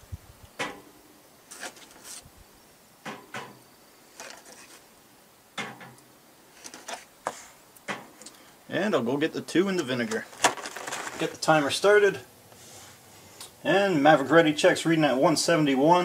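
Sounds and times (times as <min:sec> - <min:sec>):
eggs knocking on metal grate: 0:05.6 - 0:06.0.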